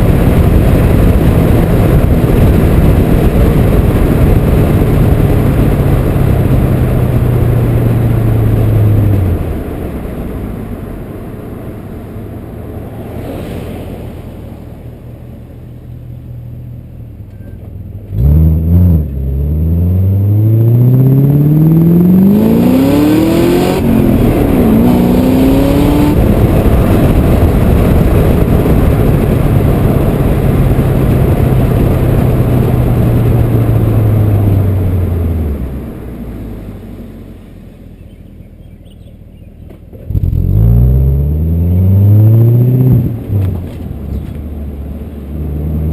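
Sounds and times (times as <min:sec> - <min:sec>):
car exhaust revving at full throttle: 0:00.0 - 0:17.2, 0:17.8 - 0:38.6, 0:39.9 - 0:45.9.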